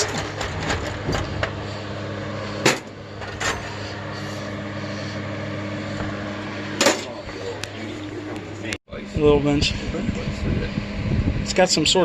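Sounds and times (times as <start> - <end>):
metal clanks of scrap metal: 0.0 - 1.6, 2.6 - 3.8, 6.8 - 7.2
steady low hum: 0.0 - 12.0.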